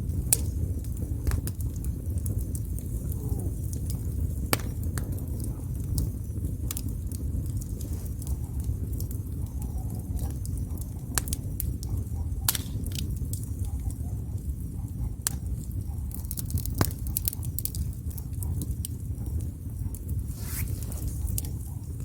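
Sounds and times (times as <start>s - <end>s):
fire crackling and popping: 0.0s - 22.0s
low rumble of flame: 0.0s - 22.0s.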